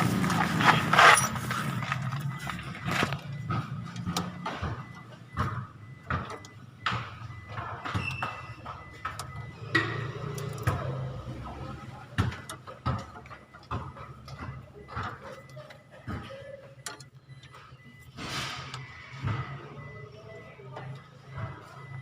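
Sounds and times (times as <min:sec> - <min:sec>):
tools and metal parts clicking: 0:00.2 - 0:03.2.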